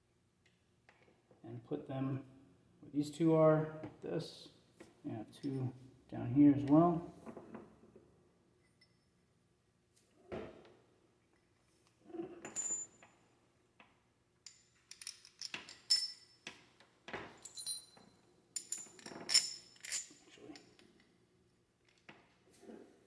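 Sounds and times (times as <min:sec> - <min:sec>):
small metal parts clinking: 0:14.4 - 0:16.5, 0:17.3 - 0:21.1.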